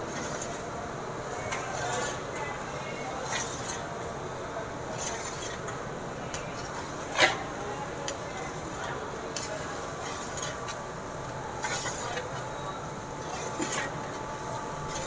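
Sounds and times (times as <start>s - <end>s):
spatula scraping a pan: 0.1s - 0.7s, 1.3s - 2.4s, 3.2s - 4.0s, 5.0s - 5.7s, 8.5s - 10.8s, 11.6s - 12.4s, 13.2s - 14.0s.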